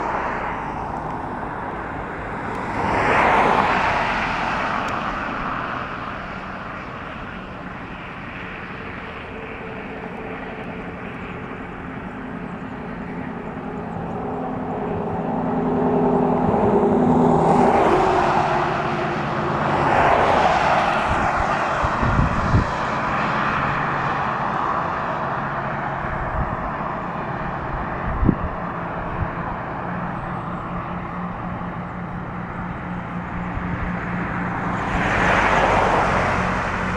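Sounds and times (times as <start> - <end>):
diesel locomotives rumbling: 0.0 - 36.9
chord of steady horn tones: 1.4 - 22.4.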